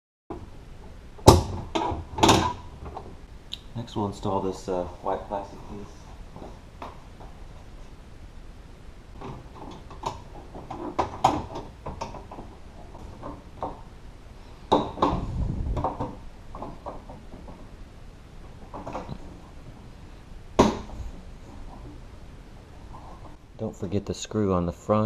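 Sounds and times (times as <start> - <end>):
plastic clatter: 18.4 - 19.5.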